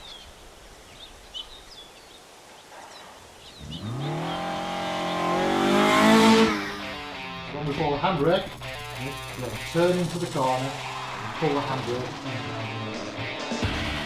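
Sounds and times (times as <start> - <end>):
birds chirping: 0.0 - 14.0
car engine accelerating: 3.5 - 14.0.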